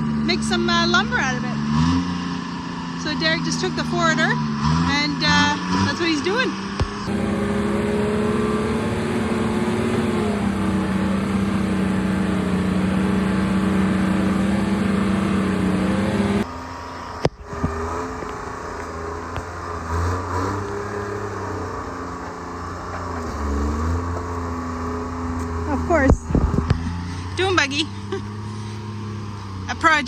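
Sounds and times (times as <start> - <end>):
engine running: 0.0 - 30.0.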